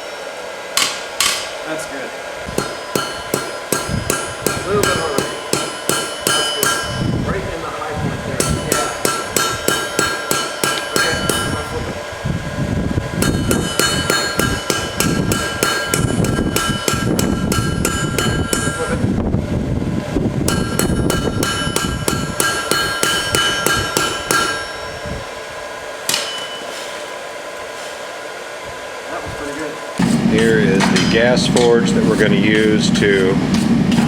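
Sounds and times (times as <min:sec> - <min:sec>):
hammer striking steel on anvil: 0:00.0 - 0:01.6, 0:02.5 - 0:07.3, 0:08.4 - 0:11.8, 0:13.2 - 0:19.0, 0:20.5 - 0:25.2, 0:26.0 - 0:27.1, 0:30.0 - 0:34.0.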